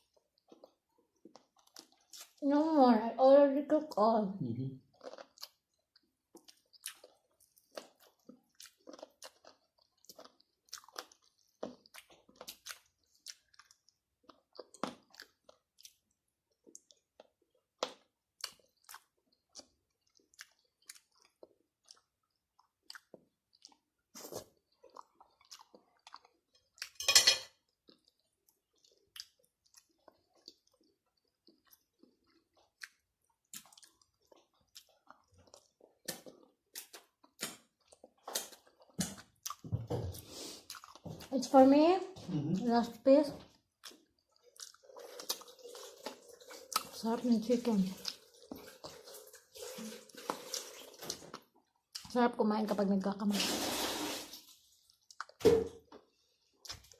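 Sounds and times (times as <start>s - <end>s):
crunching fried chicken: 6.3s - 27.0s.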